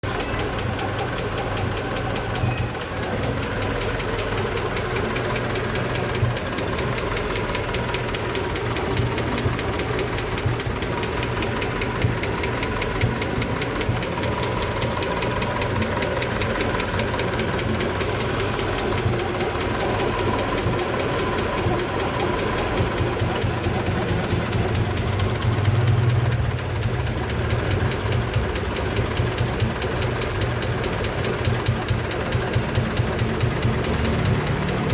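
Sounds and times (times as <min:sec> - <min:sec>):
engine running: 0:00.0 - 0:34.9
fast even ticking: 0:00.0 - 0:34.9.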